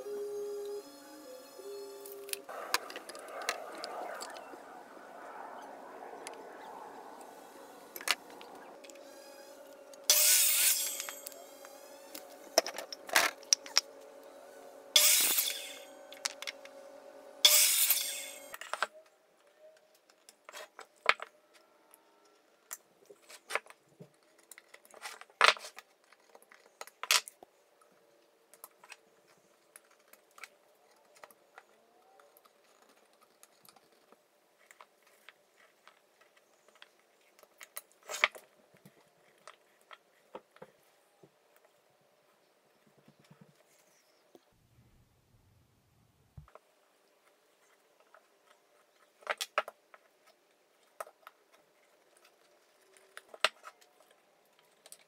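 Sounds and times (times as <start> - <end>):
power saw humming: 0.0 - 3.2, 7.2 - 18.6
saw cutting through wood: 7.2 - 18.6
wood and tools clicking: 10.8 - 14.2, 22.3 - 40.9.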